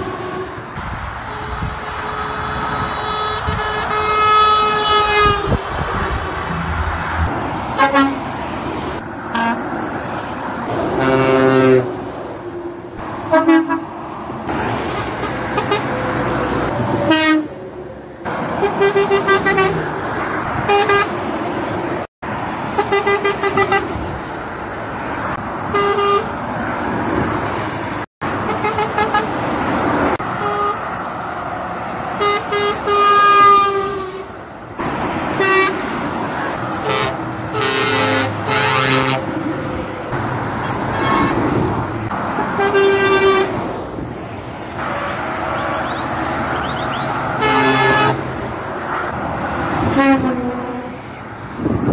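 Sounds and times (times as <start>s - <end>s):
truck horn blasts: 0.0s - 6.2s, 7.8s - 8.3s, 9.3s - 9.7s, 10.9s - 12.0s, 13.3s - 13.9s, 14.9s - 16.2s, 17.0s - 17.6s, 18.6s - 19.8s, 20.6s - 21.2s, 22.8s - 24.0s, 25.7s - 26.3s, 28.4s - 29.4s, 30.2s - 30.9s, 32.2s - 34.4s, 35.4s - 35.9s, 36.8s - 39.4s, 40.8s - 41.6s, 42.6s - 43.6s, 46.6s - 48.3s, 49.8s - 51.0s
road and engine noise: 0.0s - 51.9s.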